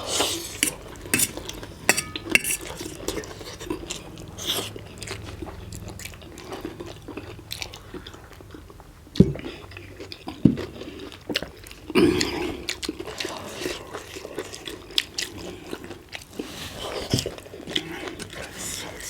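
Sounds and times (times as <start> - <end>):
people chewing: 0.0 - 19.0.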